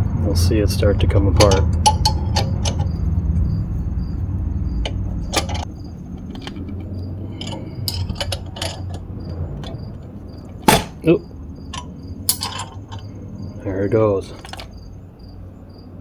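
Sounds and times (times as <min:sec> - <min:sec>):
sharp metal knocks: 0:01.2 - 0:13.2
metal clicks and clinks: 0:01.3 - 0:03.1, 0:04.8 - 0:09.8, 0:11.7 - 0:13.2, 0:14.3 - 0:14.8.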